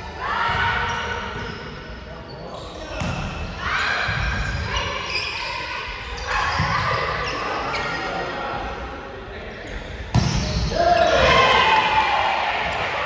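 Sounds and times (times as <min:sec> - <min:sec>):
volleyball hits and thumps: 0:10.1 - 0:10.6
players shouting: 0:10.7 - 0:13.0.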